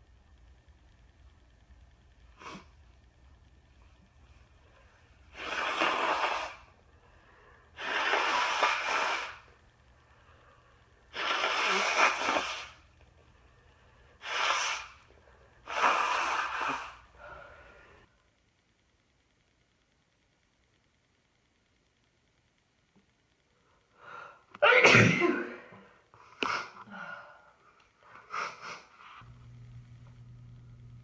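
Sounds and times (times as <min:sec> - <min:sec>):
forceful nose blowing: 0:05.3 - 0:06.7, 0:07.8 - 0:09.5, 0:11.1 - 0:12.8, 0:14.2 - 0:15.0, 0:15.7 - 0:17.1
faint sniff: 0:11.1 - 0:12.8, 0:14.2 - 0:17.9.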